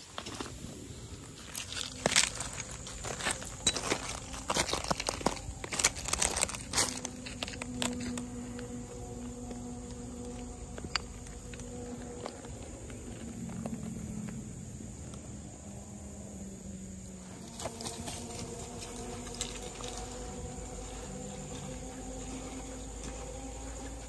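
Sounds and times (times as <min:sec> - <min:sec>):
crickets chirping: 0:00.0 - 0:24.0
low buzz: 0:00.2 - 0:24.0.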